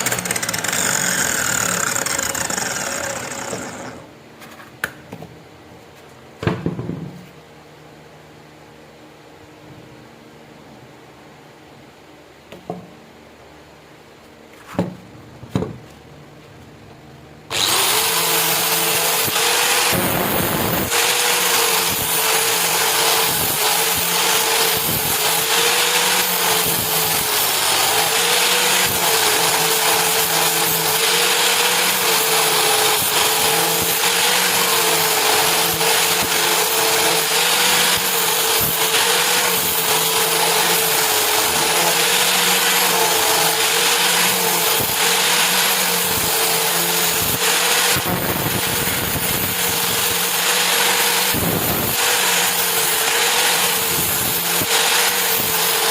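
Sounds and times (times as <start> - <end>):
electric power tool running: 0.0 - 4.1, 17.5 - 55.9.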